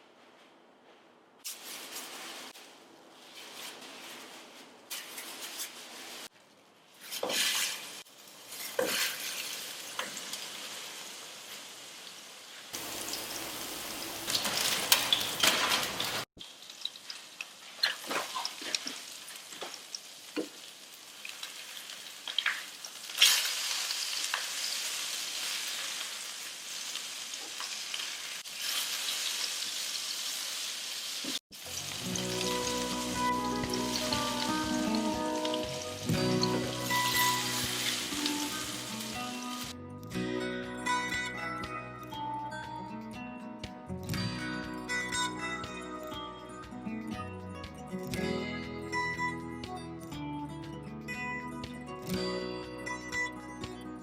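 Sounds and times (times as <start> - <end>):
food sizzling in a pan: 7.0 - 39.8.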